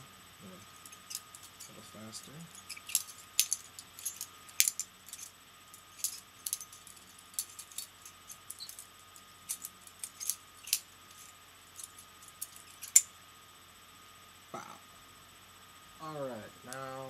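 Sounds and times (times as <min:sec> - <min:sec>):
butterfly knife clacking: 0:02.5 - 0:05.3, 0:09.5 - 0:10.8, 0:11.8 - 0:13.1.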